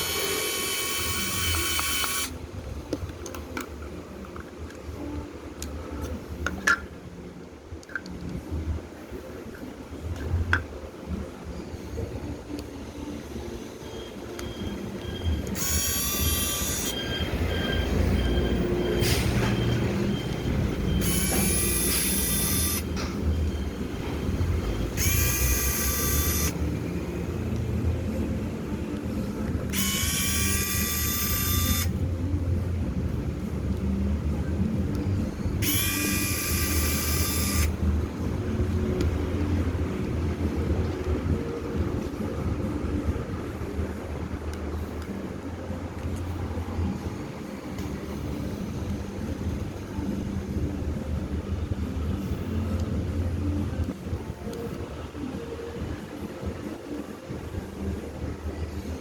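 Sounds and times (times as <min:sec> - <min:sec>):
toy motor and gears rumbling: 0:00.0 - 0:02.4, 0:15.0 - 0:18.5, 0:20.4 - 0:26.8, 0:29.5 - 0:32.3, 0:34.9 - 0:38.8
high-pitched electronic sound: 0:14.6 - 0:24.0, 0:24.6 - 0:26.7, 0:29.7 - 0:32.0, 0:35.4 - 0:37.8.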